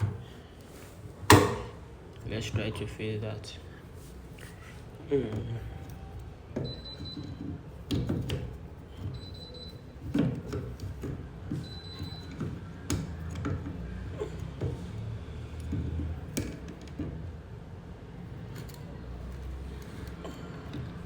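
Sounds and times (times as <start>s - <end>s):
clicks and knocks on washing machine: 1.3s - 1.8s, 6.5s - 14.8s.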